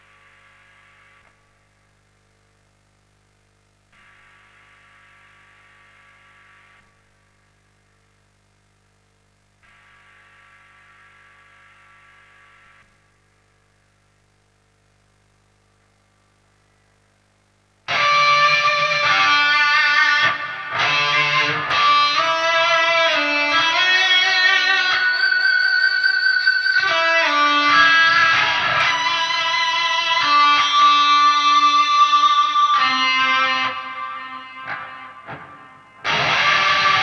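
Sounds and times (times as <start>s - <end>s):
electric guitar lead melody: 17.9s - 37.0s.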